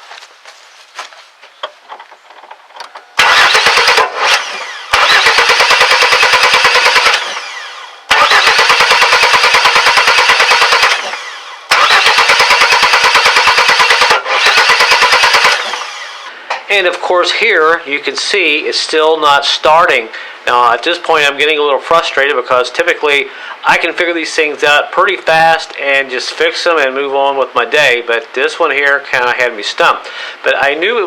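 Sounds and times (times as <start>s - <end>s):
engine cranking on starter: 3.2s - 16.3s.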